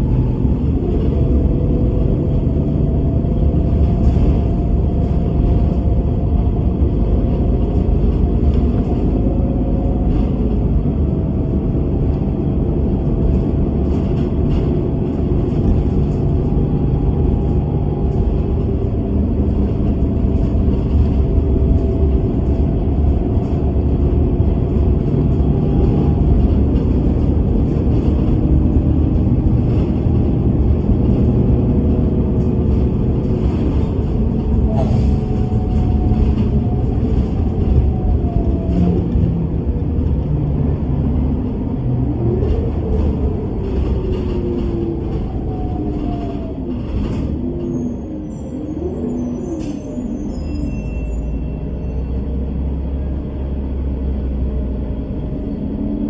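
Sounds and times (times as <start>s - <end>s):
bus engine and road rumble: 0.0s - 56.0s.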